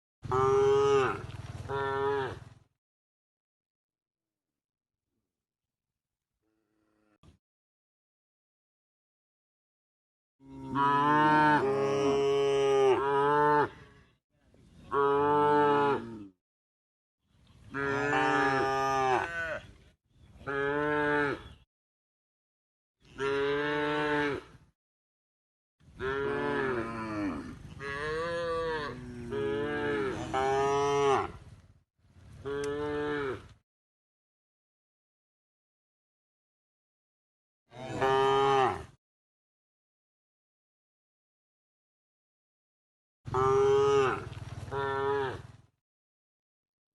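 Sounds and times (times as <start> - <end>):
cattle mooing: 0.2 - 2.5, 10.4 - 14.1, 17.7 - 19.7, 26.0 - 31.4, 32.4 - 33.5, 37.7 - 39.0, 43.3 - 45.6.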